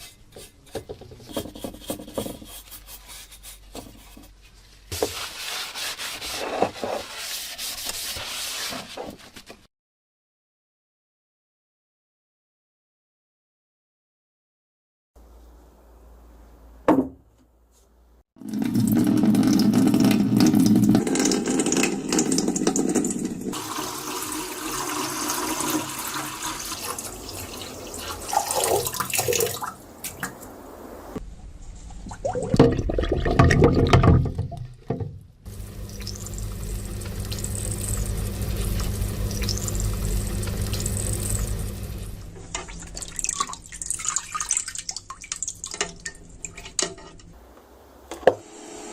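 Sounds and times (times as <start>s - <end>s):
tap water running into sink: 18.4s - 30.3s, 35.5s - 46.8s.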